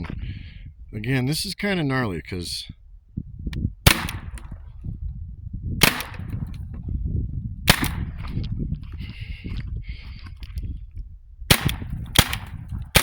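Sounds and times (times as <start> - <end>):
air pistol shots: 3.9 - 4.6, 5.8 - 6.5, 7.7 - 8.3, 11.5 - 13.0.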